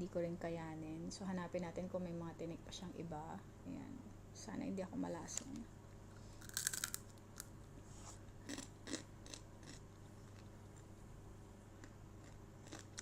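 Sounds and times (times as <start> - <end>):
low room hum: 0.0 - 13.0
crisp crunching: 6.4 - 7.0.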